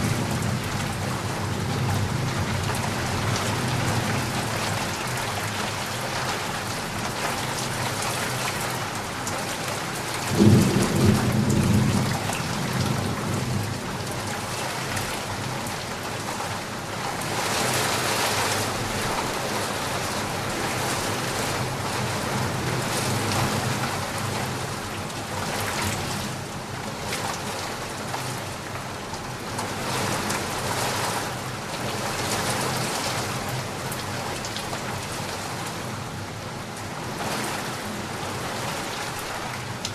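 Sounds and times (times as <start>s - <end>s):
steady rain: 0.0s - 39.9s
thunder rumble: 10.3s - 13.8s.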